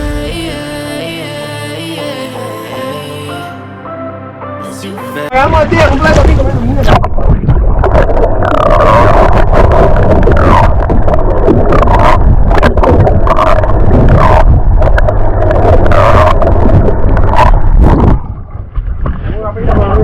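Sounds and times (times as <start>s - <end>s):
wind buffeting microphone: 5.4s - 20.0s.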